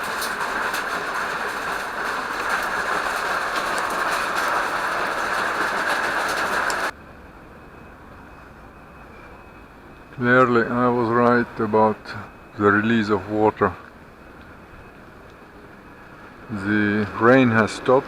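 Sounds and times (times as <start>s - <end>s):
water drips ticking: 0.0s - 6.9s
waterfall rushing: 0.0s - 6.9s.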